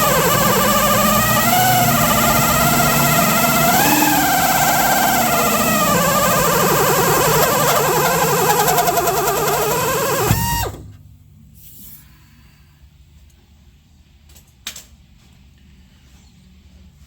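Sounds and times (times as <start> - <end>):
drill with hole saw whining: 0.0 - 10.9.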